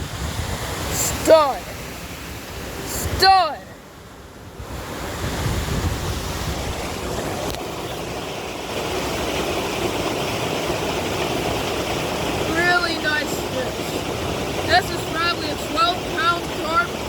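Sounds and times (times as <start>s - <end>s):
wind rumble on microphone: 0.0s - 3.2s, 4.1s - 15.8s
creek water flowing: 0.0s - 17.0s.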